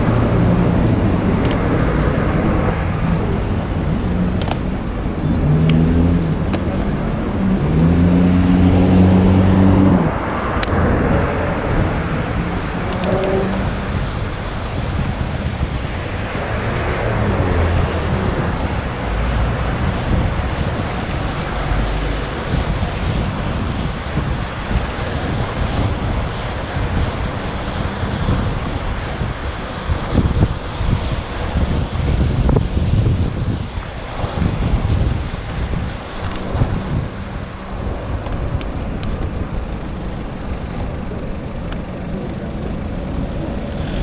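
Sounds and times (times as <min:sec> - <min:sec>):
nearby engine hum: 0:00.0 - 0:23.0, 0:36.0 - 0:44.0
vehicles passing: 0:00.0 - 0:44.0.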